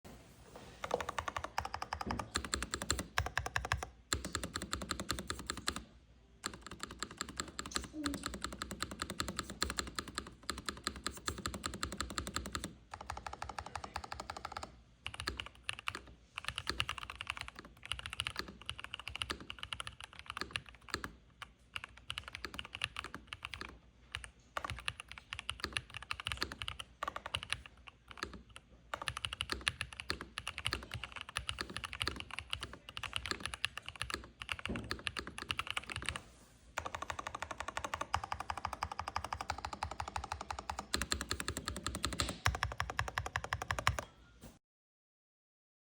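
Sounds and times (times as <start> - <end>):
mechanical keyboard typing: 0.8 - 36.2, 36.8 - 44.1.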